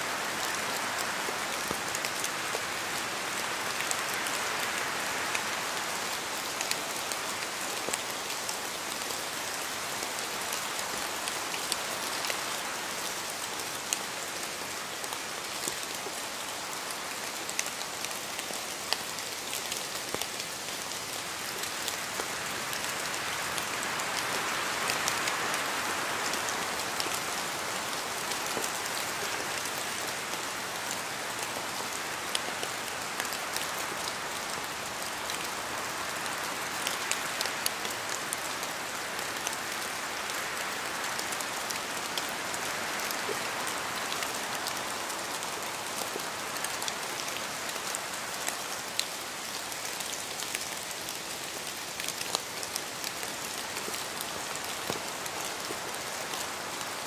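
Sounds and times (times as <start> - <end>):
steady rain falling: 0.0 - 57.0.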